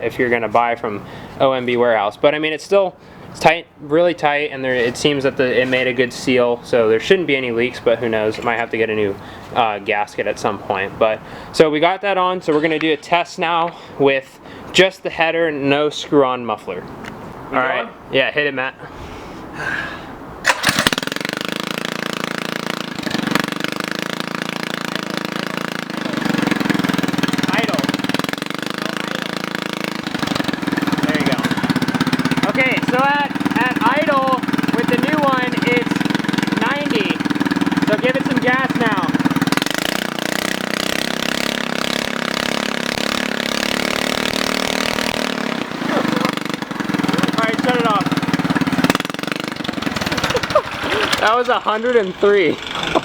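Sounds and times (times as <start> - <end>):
go-kart engine idling loudly: 20.5 - 53.0.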